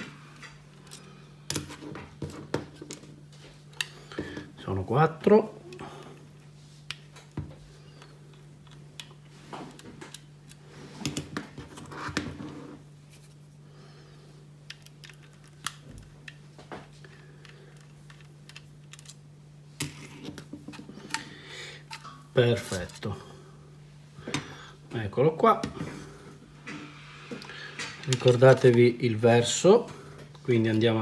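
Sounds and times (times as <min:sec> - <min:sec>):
steady low hum: 0:00.0 - 0:31.0
metal caddy handling: 0:19.9 - 0:23.2.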